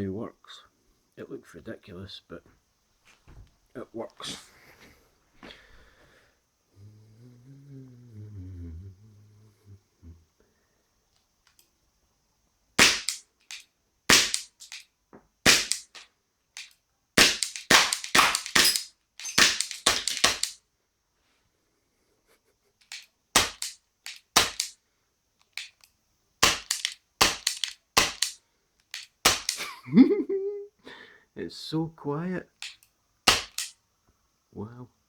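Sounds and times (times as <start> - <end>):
pellets hitting target: 12.8 - 14.8, 15.4 - 16.0, 16.6 - 20.6, 22.8 - 24.8, 26.4 - 29.8, 32.6 - 33.7
air pistol sharp cracks: 12.8 - 20.6, 22.8 - 24.8, 25.4 - 29.7, 32.6 - 33.8.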